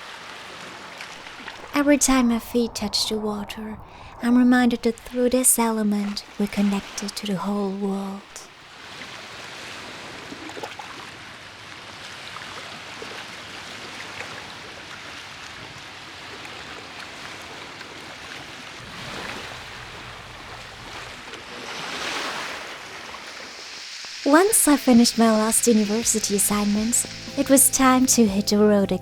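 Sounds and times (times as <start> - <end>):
sea waves washing on shore: 0.1 - 28.8.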